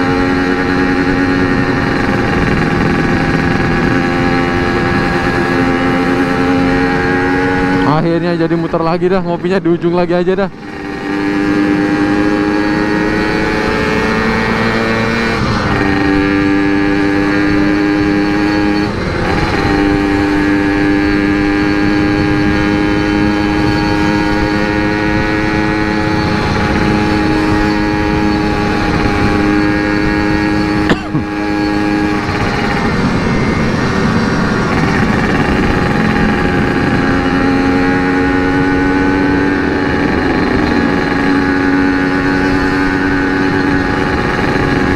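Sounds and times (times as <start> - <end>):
two-stroke motorcycle engine: 0.0 - 44.9.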